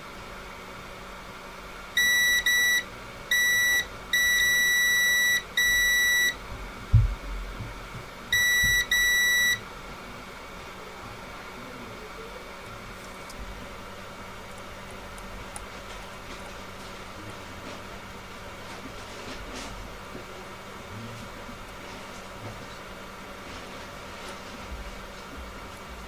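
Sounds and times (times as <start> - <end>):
continuity tester beeping: 2.0 - 6.4, 8.3 - 9.7
short low thump: 6.5 - 8.1.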